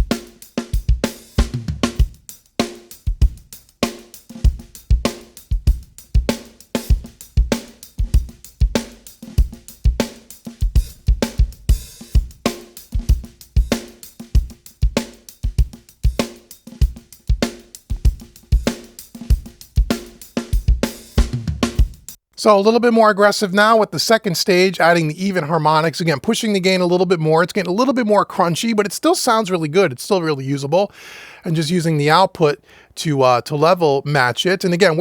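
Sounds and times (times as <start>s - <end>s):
rock drum kit beat: 0.0s - 22.2s.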